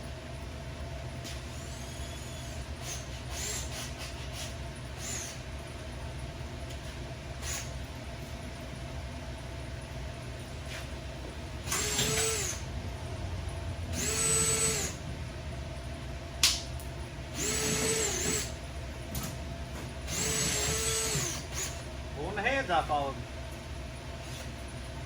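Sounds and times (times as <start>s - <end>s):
power drill whining: 1.2s - 5.4s, 7.4s - 7.8s, 11.6s - 12.7s, 13.9s - 15.0s, 17.4s - 18.6s, 20.1s - 21.9s
sharp click: 16.4s - 16.7s.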